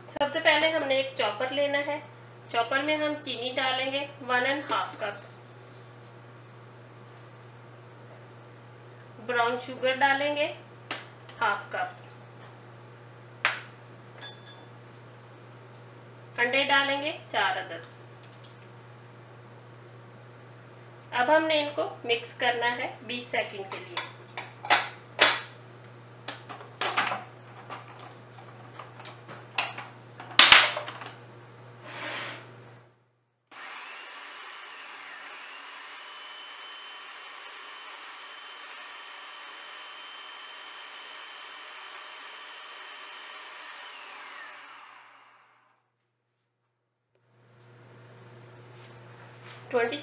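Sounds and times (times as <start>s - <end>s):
food chopper motor whining: 33.5s - 45.9s.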